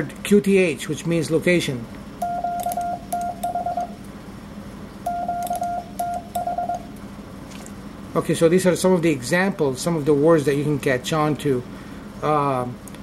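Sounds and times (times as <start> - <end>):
morse code tone: 2.2 - 4.0, 5.1 - 6.9.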